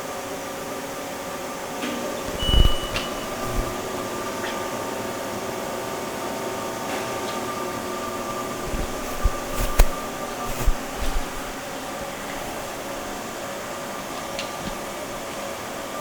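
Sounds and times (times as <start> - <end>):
machine hum with whine: 2.1 - 4.5.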